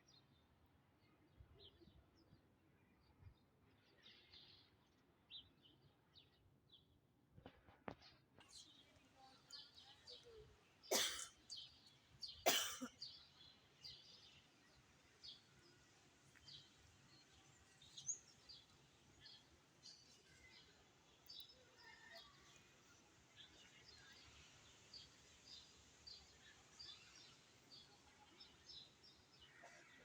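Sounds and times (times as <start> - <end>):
small birds chirping: 7.9 - 30.0.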